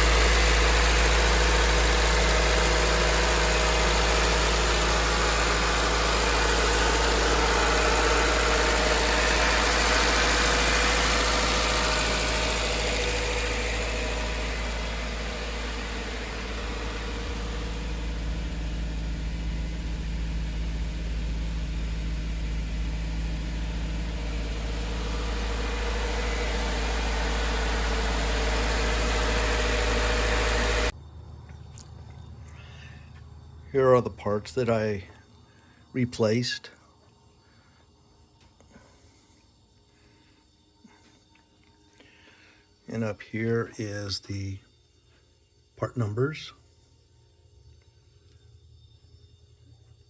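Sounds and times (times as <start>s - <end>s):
car engine idling: 0.0s - 30.9s.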